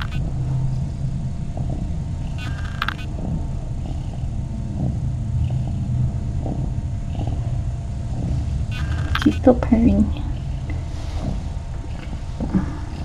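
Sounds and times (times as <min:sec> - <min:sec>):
cat purring: 0:00.0 - 0:13.0
high squeak: 0:08.7 - 0:09.5.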